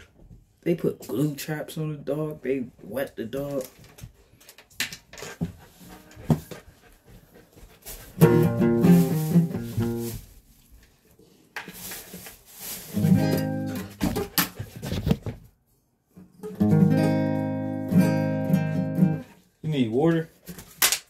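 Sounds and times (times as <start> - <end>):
guitar strummed and plucked chords: 8.2 - 10.1, 13.0 - 14.0, 16.4 - 19.3.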